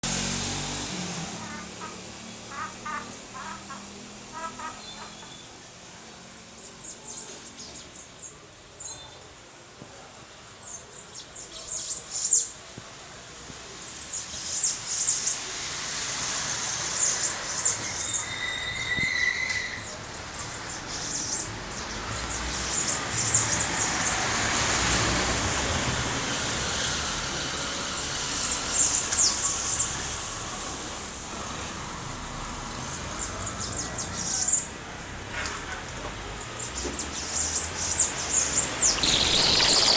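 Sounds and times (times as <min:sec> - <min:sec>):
passing car: 0:00.0 - 0:05.3, 0:15.1 - 0:39.9
small bird chirping: 0:38.3 - 0:39.9.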